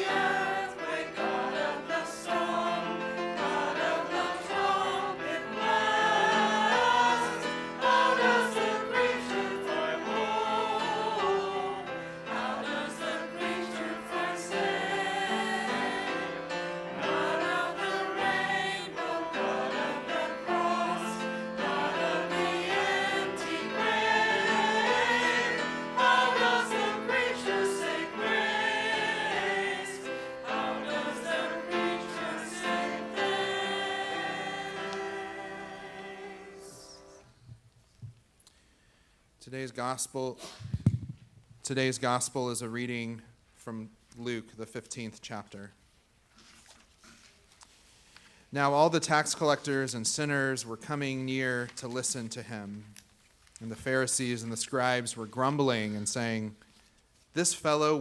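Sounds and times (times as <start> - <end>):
group singing a hymn: 0.0 - 37.3.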